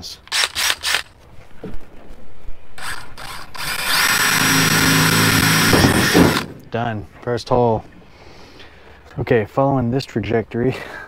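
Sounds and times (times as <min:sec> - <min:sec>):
drill boring through sheet metal: 0:02.8 - 0:06.5.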